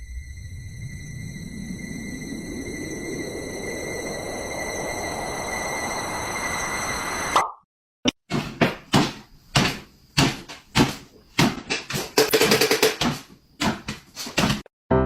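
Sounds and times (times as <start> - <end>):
sharp knocks and bangs: 8.1 - 14.7.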